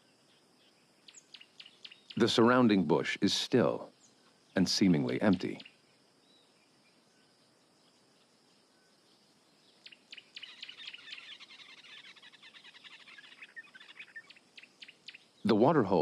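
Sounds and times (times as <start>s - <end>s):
faint bush ambience: 0.0s - 16.0s
bird chattering calls: 9.8s - 15.6s.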